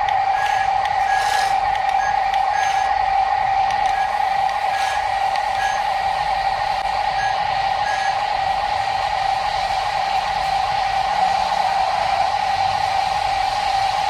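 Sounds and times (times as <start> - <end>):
toy machine motor whine: 0.0 - 6.0, 7.0 - 8.4
continuous noise: 0.0 - 14.0.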